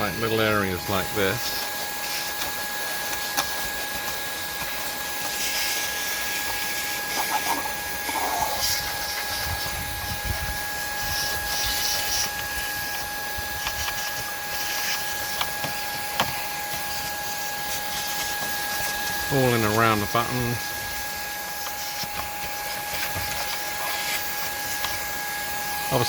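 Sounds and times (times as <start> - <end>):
cordless vacuum whining: 0.0 - 26.0
vacuum attachment rubbing and tapping: 11.0 - 25.1.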